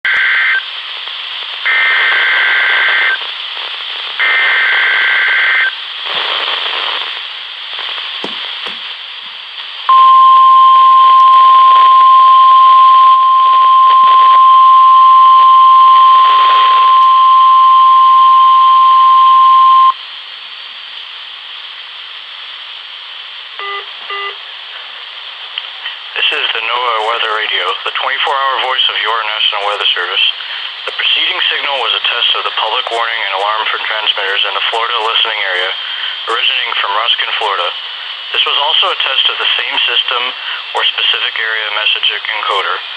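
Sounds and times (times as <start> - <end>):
radio hiss: 0.1 - 42.9
steady warning alarm tone: 9.9 - 19.9.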